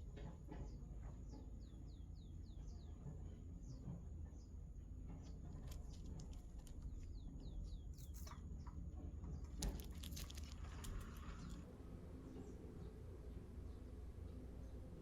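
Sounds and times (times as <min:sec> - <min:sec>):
small birds chirping: 0:05.2 - 0:11.6.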